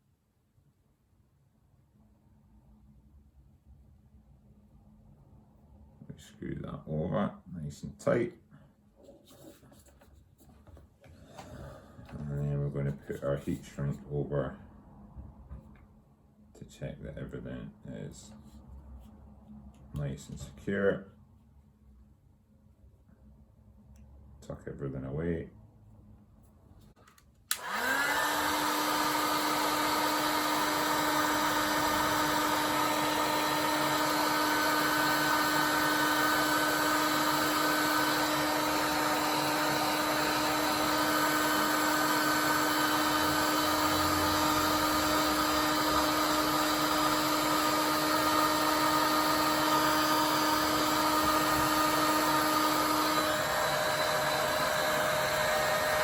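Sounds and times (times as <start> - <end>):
heat gun fan blowing: 27.5 - 56.0.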